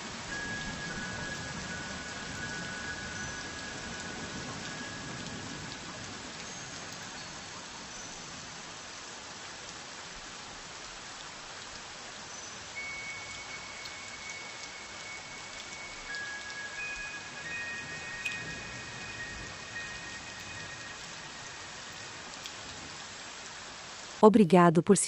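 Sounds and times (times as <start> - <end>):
steady rain: 0.0 - 24.2.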